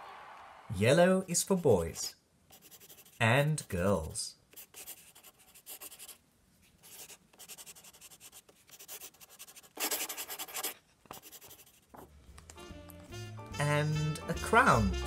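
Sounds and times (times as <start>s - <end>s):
rapid scratching strokes: 6.8s - 11.9s.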